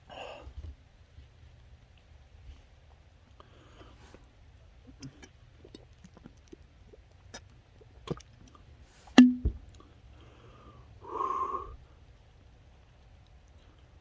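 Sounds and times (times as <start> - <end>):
person gulping soda: 4.9 - 9.6.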